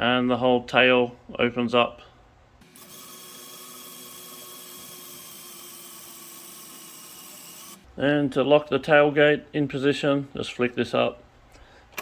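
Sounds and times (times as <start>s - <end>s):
small electric motor whirring: 2.6s - 7.8s.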